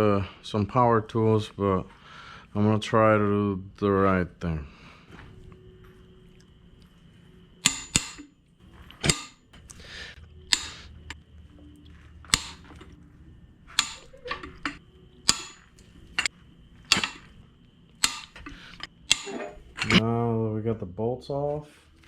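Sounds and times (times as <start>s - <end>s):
wrench scraping: 7.6s - 9.8s, 10.4s - 11.2s, 12.2s - 13.0s, 13.7s - 17.4s, 18.0s - 20.0s
bolts cracking loose: 7.6s - 11.2s, 12.2s - 13.0s, 13.7s - 20.0s.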